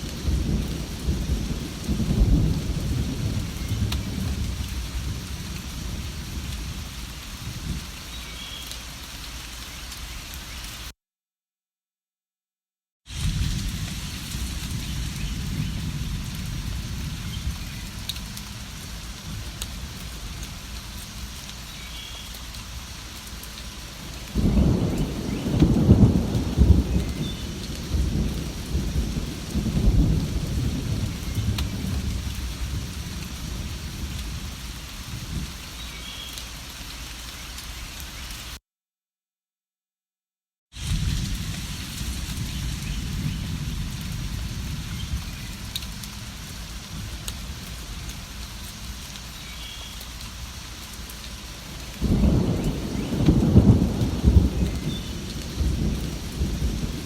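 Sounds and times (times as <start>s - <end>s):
rolling thunder: 0.0s - 6.9s, 13.1s - 20.7s, 24.0s - 35.6s, 40.8s - 48.3s, 51.6s - 57.0s
steady rain: 0.0s - 10.9s, 13.1s - 38.6s, 40.8s - 57.0s.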